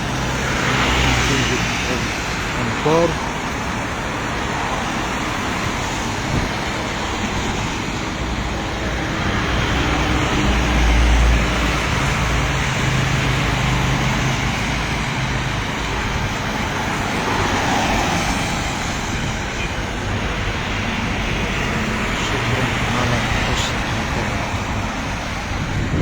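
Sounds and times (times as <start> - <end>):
vehicle engine passing: 0.0 - 3.9
tyres hissing on wet road: 0.0 - 26.0.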